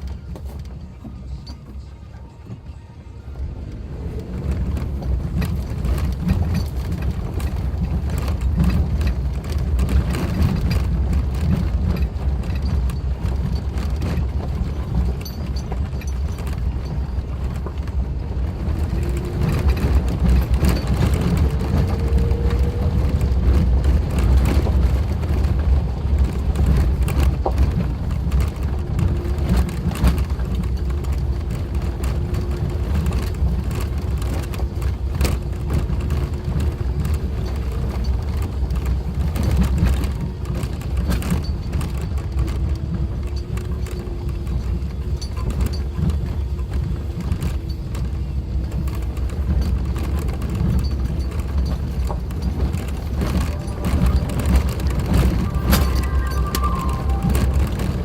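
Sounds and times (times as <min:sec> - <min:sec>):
vehicle driving on gravel: 0:00.0 - 0:58.0.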